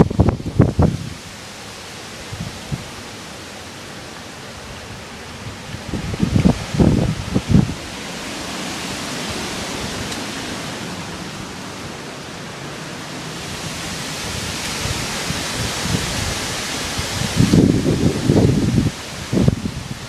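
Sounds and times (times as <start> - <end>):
strong wind rushing: 0.0 - 1.3, 2.2 - 3.0, 4.8 - 20.0
wind buffeting microphone: 0.0 - 1.4, 2.1 - 3.1, 4.6 - 20.0.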